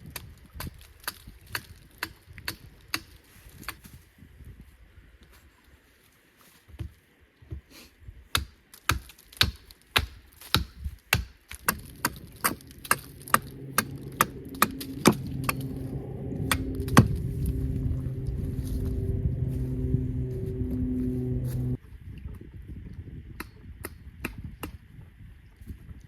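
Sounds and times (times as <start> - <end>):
tool chopping wood: 8.4 - 12.6
low steady hum: 11.5 - 21.8.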